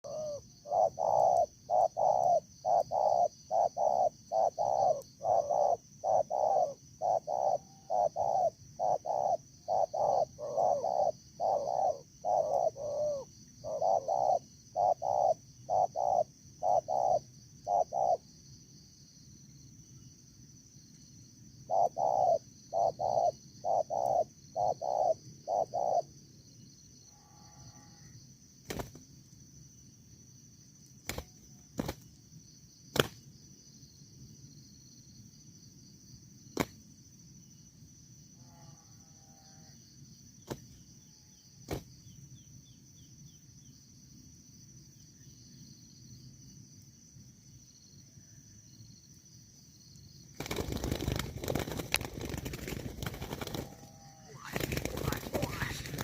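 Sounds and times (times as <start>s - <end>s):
dove cooing: 0.0s - 18.2s, 21.7s - 26.1s, 50.4s - 56.0s.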